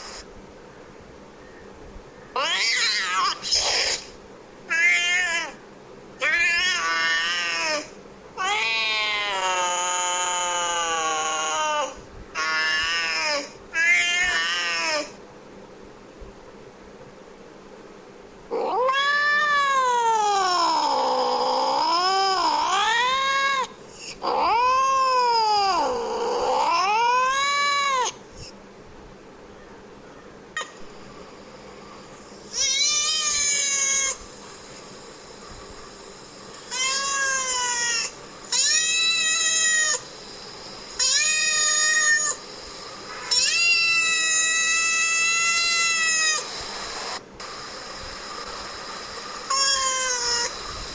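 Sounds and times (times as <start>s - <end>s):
cat meowing: 4.7s - 5.6s, 12.4s - 15.1s, 18.5s - 23.7s, 32.5s - 34.2s, 36.6s - 40.1s, 41.0s - 42.4s, 43.2s - 46.5s, 49.5s - 50.6s
cat yowling: 6.2s - 15.1s, 18.5s - 28.2s, 32.5s - 34.2s, 36.6s - 40.1s, 41.0s - 42.4s, 43.1s - 47.1s, 49.5s - 50.6s.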